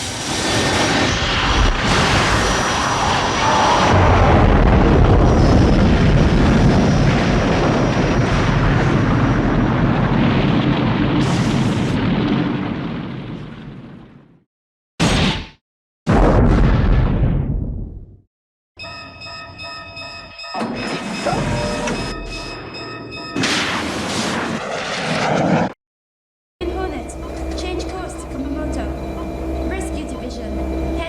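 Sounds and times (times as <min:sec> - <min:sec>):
jet thrusters rumbling: 0:26.6 - 0:31.0.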